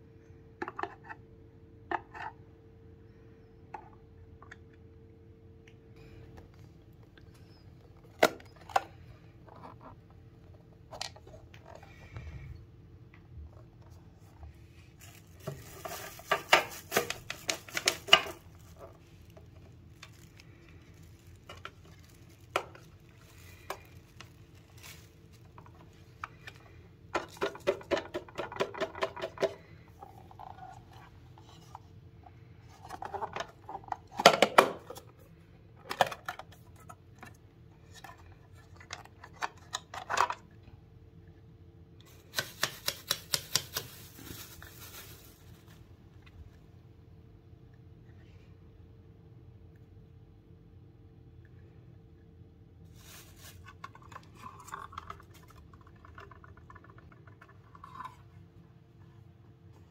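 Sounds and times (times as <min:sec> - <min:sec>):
faint steady hum: 0:00.0 - 0:59.9
hard objects clicking and knocking: 0:25.6 - 0:29.6.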